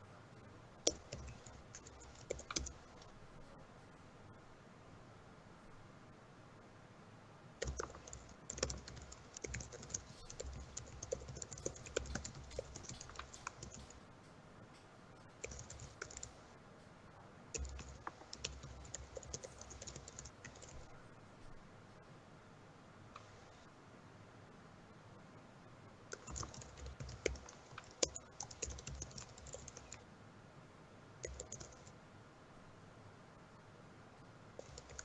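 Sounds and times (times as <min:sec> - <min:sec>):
keyboard typing: 0:00.8 - 0:03.2, 0:07.6 - 0:16.5, 0:17.5 - 0:20.9, 0:26.1 - 0:30.0, 0:31.2 - 0:32.0, 0:34.6 - 0:35.0.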